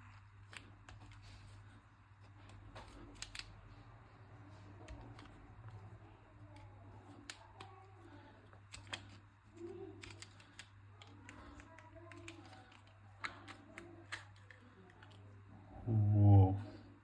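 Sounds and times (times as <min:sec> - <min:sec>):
tools clicking on plastic: 0:06.4 - 0:15.3
steady low hum: 0:15.3 - 0:17.0.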